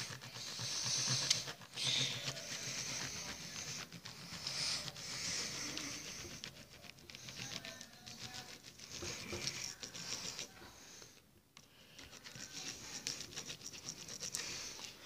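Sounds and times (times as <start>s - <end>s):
small saw blade rasping: 0.0s - 11.1s.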